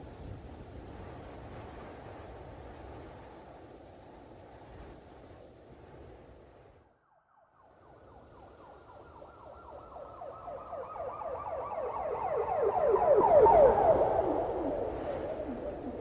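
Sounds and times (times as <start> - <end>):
police siren sweeping: 7.0 - 16.0.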